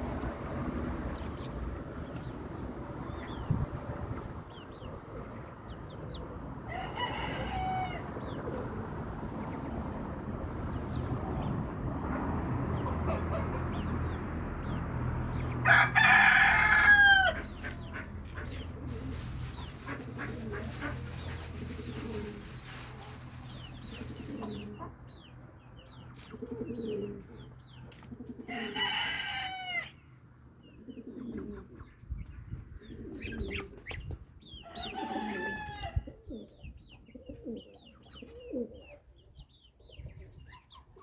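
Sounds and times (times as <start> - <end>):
rooster crowing: 6.7 - 8.0, 15.6 - 17.5, 28.5 - 29.9, 34.7 - 36.0
small birds chirping: 17.5 - 28.1, 30.0 - 41.0.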